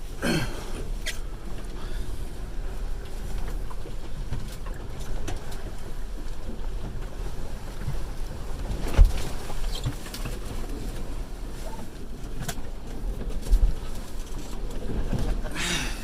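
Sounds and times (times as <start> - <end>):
water rushing along boat hull: 0.0 - 16.0.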